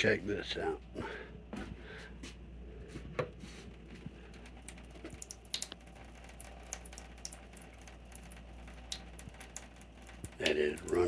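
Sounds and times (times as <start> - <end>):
water running from a tap: 4.1 - 11.0.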